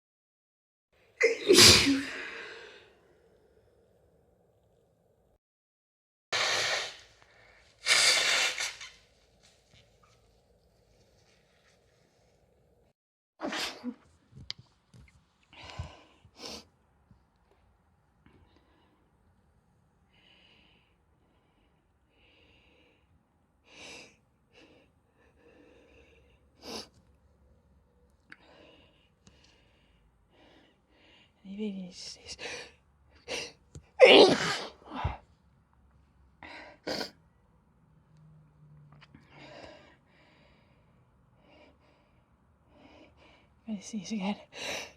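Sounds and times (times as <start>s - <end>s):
person sneezing: 1.2s - 2.6s, 7.8s - 9.0s, 34.0s - 35.1s
person sniffing: 6.4s - 7.1s, 7.8s - 8.9s.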